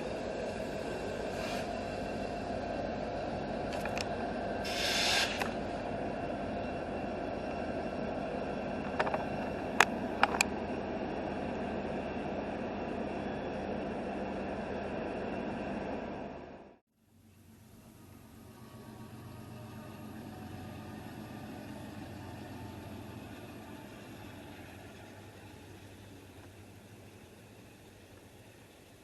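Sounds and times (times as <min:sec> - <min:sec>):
train rumbling: 0:00.0 - 0:29.0
short hiss: 0:04.6 - 0:05.6.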